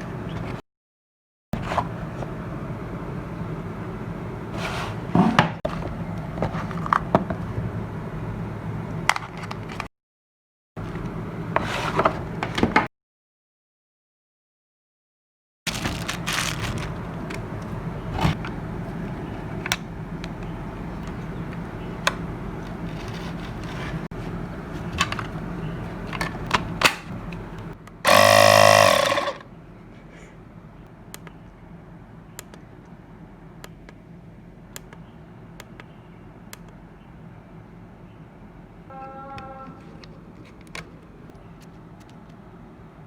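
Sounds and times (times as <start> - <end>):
compressor running: 26.8 - 29.6
loud pitched tone: 28.1 - 29.4.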